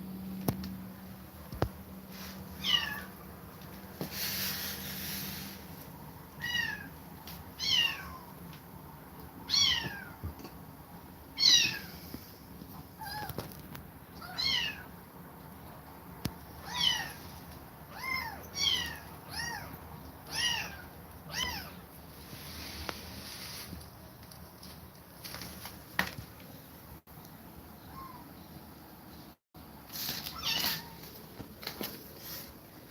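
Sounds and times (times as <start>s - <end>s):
kitten meowing: 2.6s - 3.1s.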